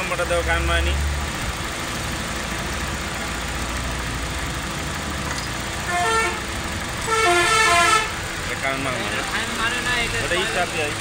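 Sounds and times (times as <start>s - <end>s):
car engine idling and misfiring: 0.0s - 11.0s
horn toots: 5.8s - 8.2s.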